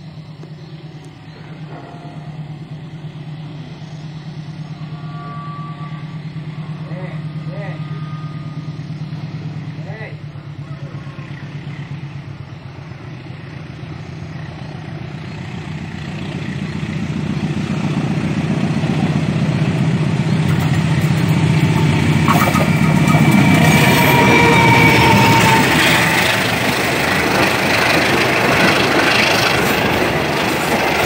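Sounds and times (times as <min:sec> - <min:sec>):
locomotive engine hum: 0:00.0 - 0:31.0
train hiss: 0:00.0 - 0:31.0
high metallic squeal: 0:01.2 - 0:11.8, 0:20.3 - 0:27.9.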